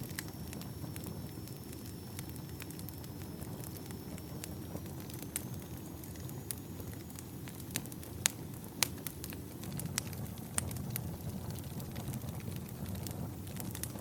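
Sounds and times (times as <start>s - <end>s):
campfire flames rumbling: 0.0s - 14.0s
firewood crackling and popping: 0.0s - 14.0s.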